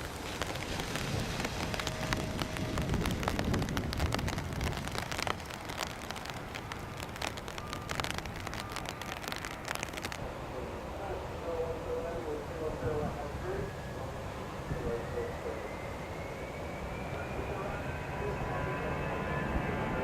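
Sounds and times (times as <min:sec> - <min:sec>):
raindrops pattering: 0:00.0 - 0:10.2
low rumble: 0:00.0 - 0:20.0.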